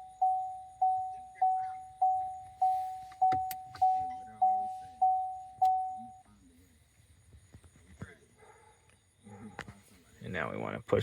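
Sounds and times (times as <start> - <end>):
car warning chime dinging: 0.0 - 6.3.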